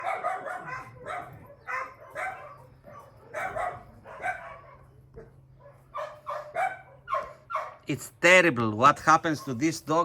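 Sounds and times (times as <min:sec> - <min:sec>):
dog barking: 0:00.0 - 0:07.9.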